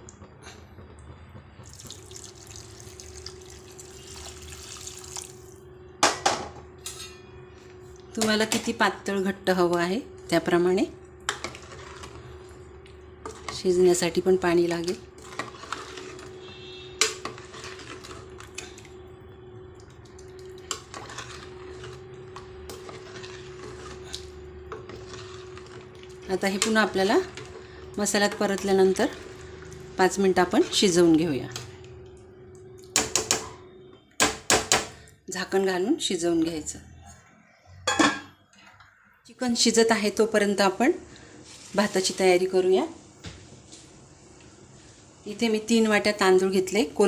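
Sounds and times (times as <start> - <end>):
hot water pouring into a pan: 1.6 - 5.6
spoon stirring in a pot: 11.1 - 19.1, 19.8 - 32.0.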